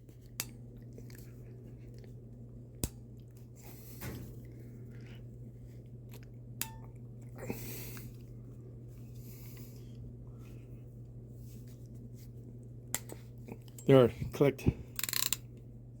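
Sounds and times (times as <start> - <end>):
steady low hum: 0.0 - 16.0
crimping pliers ratchet clicking: 15.0 - 15.4.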